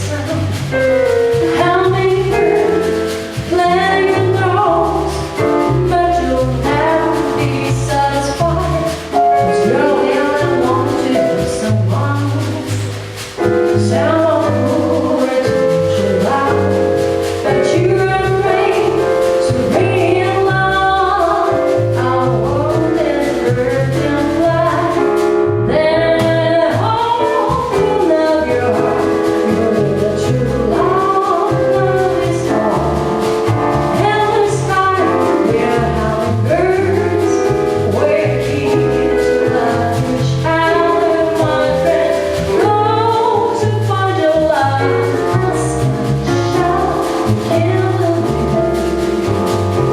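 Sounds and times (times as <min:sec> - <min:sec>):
bass line: 0:00.0 - 0:49.9
piano chords: 0:00.0 - 0:49.9
person singing: 0:25.7 - 0:49.0.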